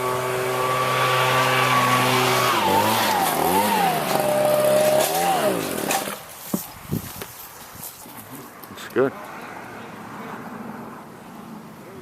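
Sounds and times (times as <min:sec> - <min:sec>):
engine revving: 0:00.0 - 0:06.2.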